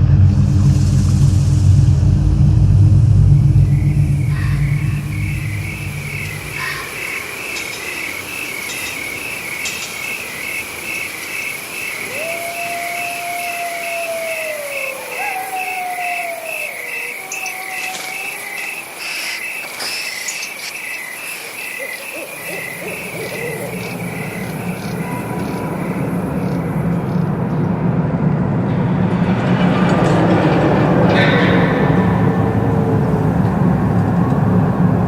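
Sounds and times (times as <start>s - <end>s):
low rumbling drone: 0.0s - 7.6s, 23.0s - 35.0s
crickets chirping: 0.0s - 28.0s, 30.4s - 35.0s
falling hoot-like calls: 3.5s - 8.3s, 11.1s - 19.9s, 21.2s - 27.2s.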